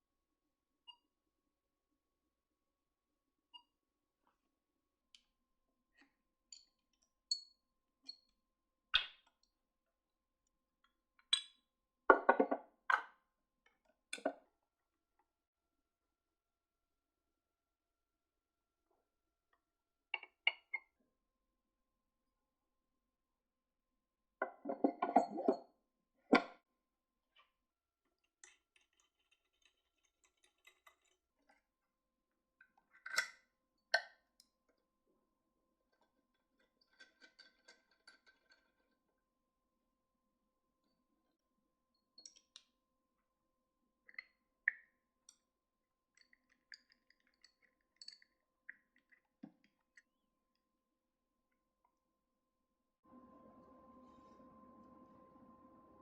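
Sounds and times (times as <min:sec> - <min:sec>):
small objects clicking and clinking: 0:46.2 - 0:50.1.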